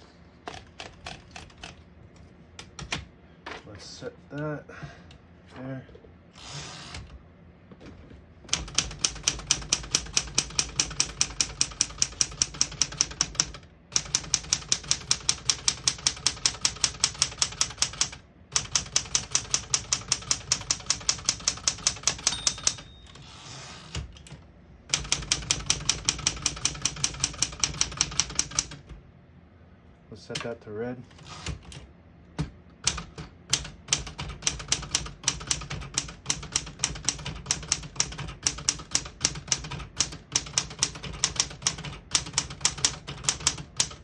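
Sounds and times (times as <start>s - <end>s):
manual typewriter typing: 0.5s - 1.8s, 8.5s - 28.9s, 32.8s - 44.0s.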